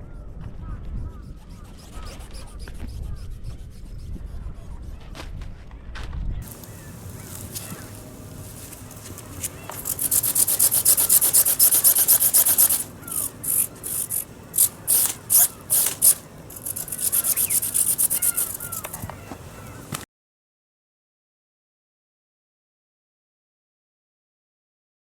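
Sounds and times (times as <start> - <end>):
mechanical wings flapping: 6.4 - 20.0.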